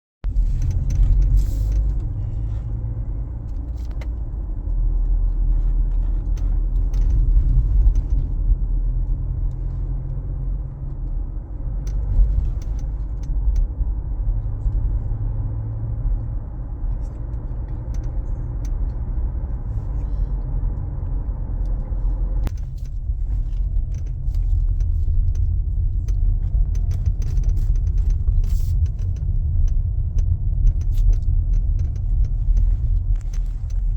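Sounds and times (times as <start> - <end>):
low road rumble in cabin: 0.2 - 33.9
windshield clicking and rattling: 0.3 - 13.8, 20.7 - 33.9.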